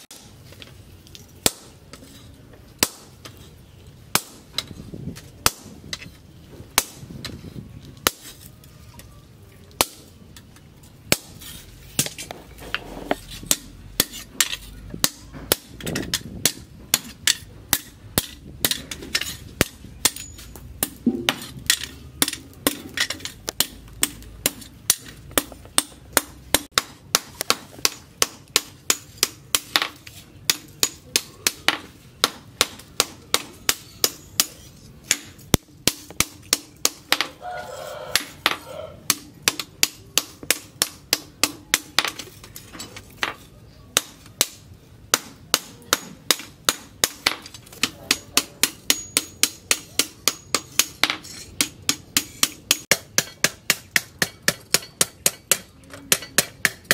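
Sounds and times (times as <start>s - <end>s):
hammer ringing on steel: 48.1s - 50.7s.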